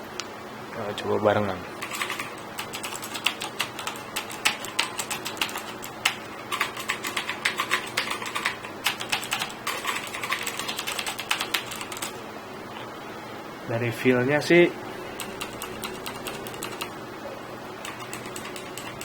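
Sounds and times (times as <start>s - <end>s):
clicky mechanical keyboard typing: 1.8s - 12.2s, 15.2s - 17.0s, 17.8s - 19.0s.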